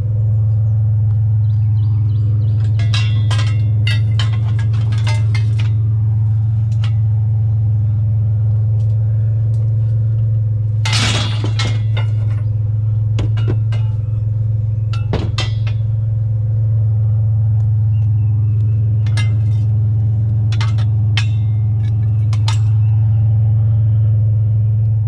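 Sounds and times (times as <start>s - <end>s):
steady low hum: 0.0s - 25.0s
metal scraping clatter: 2.4s - 8.0s, 9.6s - 16.5s, 18.1s - 22.9s
scrap metal clinking: 2.5s - 7.3s, 9.8s - 16.2s, 18.9s - 22.9s.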